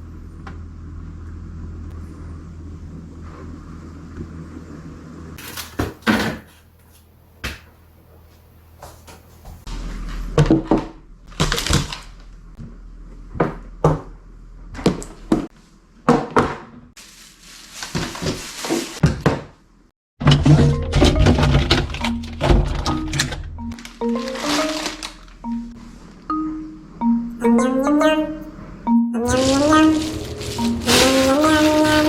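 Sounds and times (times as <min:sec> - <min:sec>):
low steady hum: 0:00.0 - 0:05.7, 0:20.2 - 0:32.0
objects knocking and clattering: 0:20.2 - 0:25.6.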